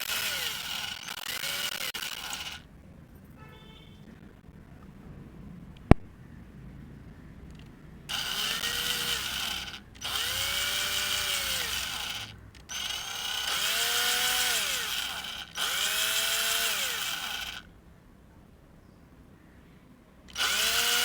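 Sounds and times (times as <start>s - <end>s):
power screwdriver motor whine: 0.0s - 2.6s, 8.1s - 17.7s, 20.3s - 21.0s.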